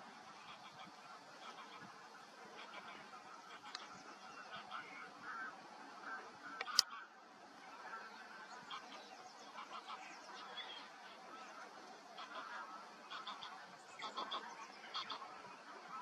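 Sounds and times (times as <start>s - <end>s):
flock of birds calling: 0.0s - 16.0s
steady background hiss: 0.0s - 16.0s.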